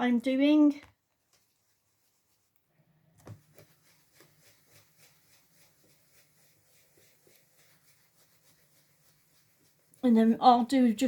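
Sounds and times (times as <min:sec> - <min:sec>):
stencil brush soft taps: 0:00.8 - 0:10.0
brush thump: 0:03.2 - 0:10.0.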